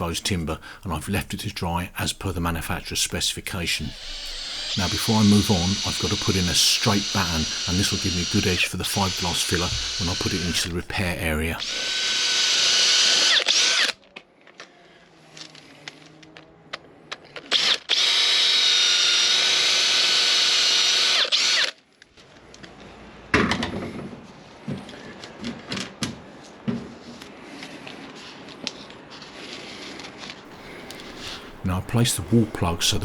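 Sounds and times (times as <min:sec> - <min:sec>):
electric power drill drilling: 0:03.8 - 0:14.0, 0:17.4 - 0:21.8, 0:30.5 - 0:31.6.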